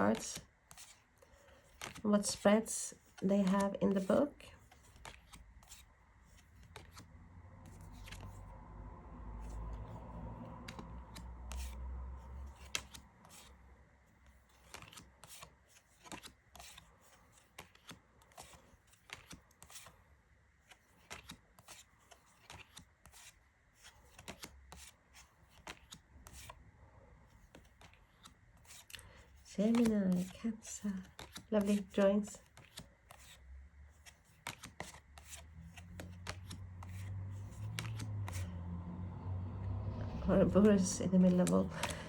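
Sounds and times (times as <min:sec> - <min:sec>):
cards clicking and sliding: 0:00.1 - 0:02.4, 0:03.0 - 0:08.5, 0:09.4 - 0:13.6, 0:14.2 - 0:20.0, 0:20.6 - 0:26.6, 0:27.3 - 0:38.6, 0:40.1 - 0:42.0
low rumble: 0:38.2 - 0:42.0.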